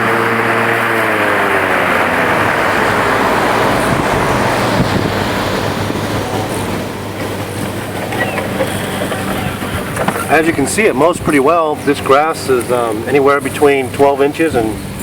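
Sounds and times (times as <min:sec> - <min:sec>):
electric lawn mower cutting grass: 0:00.0 - 0:11.2.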